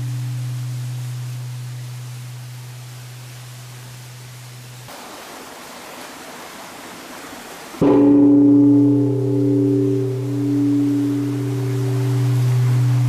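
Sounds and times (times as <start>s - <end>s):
low hum: 0.0s - 4.9s, 7.8s - 13.0s
soft hiss: 0.0s - 13.0s
large temple bell ringing: 7.8s - 13.0s.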